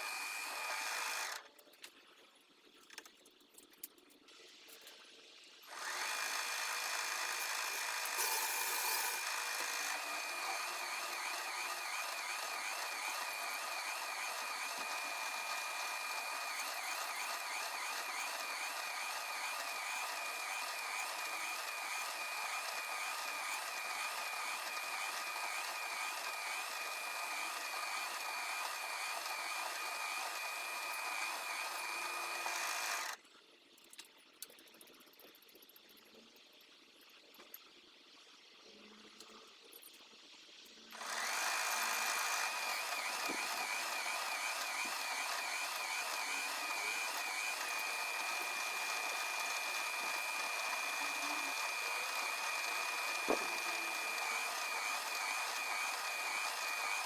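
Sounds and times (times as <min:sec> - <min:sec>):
machine-tool motor whining: 0:00.0 - 0:01.5, 0:05.7 - 0:33.2, 0:40.9 - 0:57.0.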